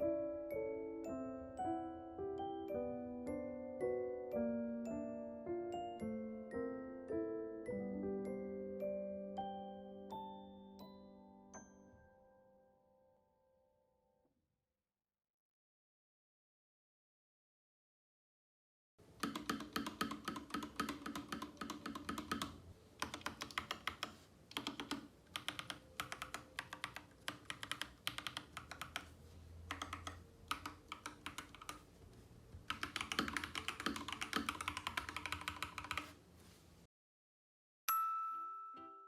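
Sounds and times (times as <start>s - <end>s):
mechanical keyboard typing: 19.2s - 31.9s, 32.6s - 36.2s.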